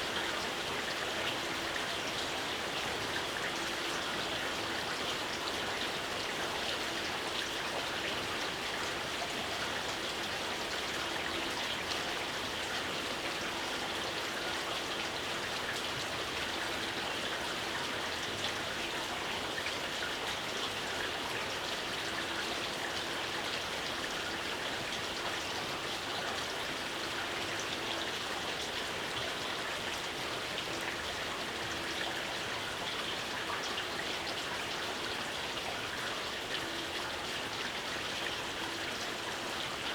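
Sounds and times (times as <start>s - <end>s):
gentle rain falling: 0.0s - 39.9s.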